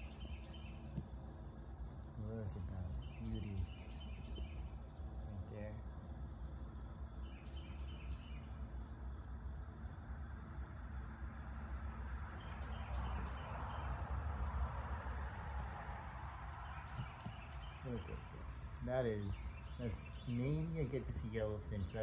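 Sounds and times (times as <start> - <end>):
insects droning: 0.0 - 22.0.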